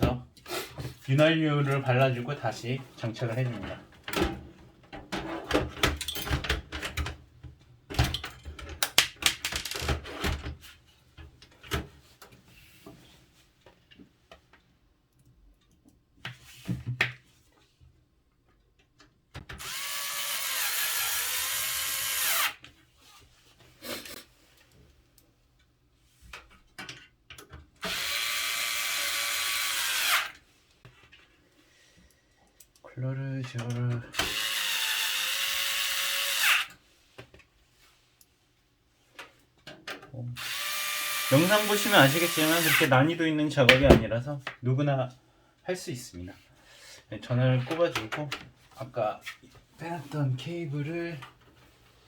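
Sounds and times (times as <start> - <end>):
plastic parts knocking and clicking: 7.9 - 10.4
electric screwdriver running: 19.6 - 22.6, 27.8 - 30.4, 34.2 - 36.7, 40.4 - 42.9.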